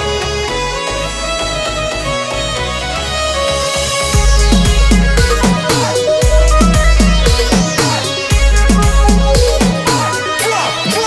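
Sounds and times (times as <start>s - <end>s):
heavy bass: 0.0s - 11.0s
electronic dance beat: 3.0s - 11.0s.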